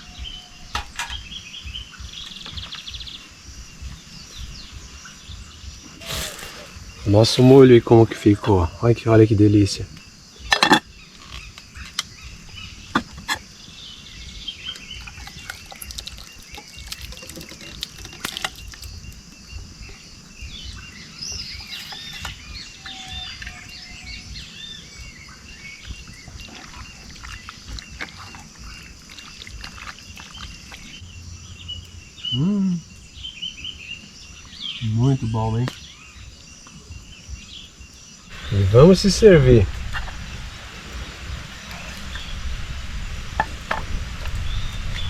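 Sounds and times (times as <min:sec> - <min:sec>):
small birds chirping: 0:00.0 - 0:45.0
low background rumble: 0:17.8 - 0:34.4.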